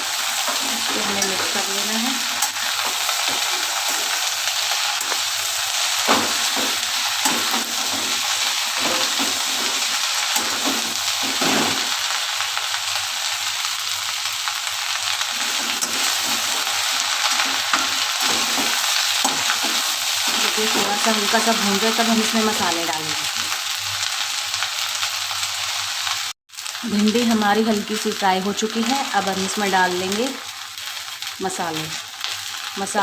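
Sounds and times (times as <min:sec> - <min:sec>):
okra sizzling in hot oil: 0:00.0 - 0:33.0
spoon scraping through vegetables: 0:00.2 - 0:11.9, 0:15.3 - 0:21.4.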